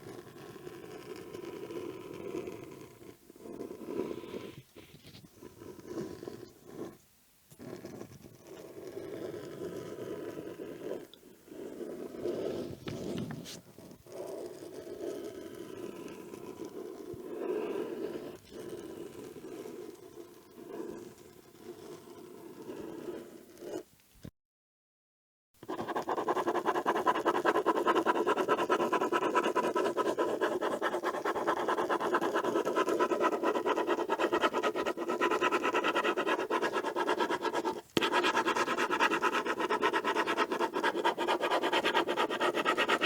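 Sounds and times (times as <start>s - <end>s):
pen scribbling on paper: 7.6s - 23.8s, 25.6s - 43.0s.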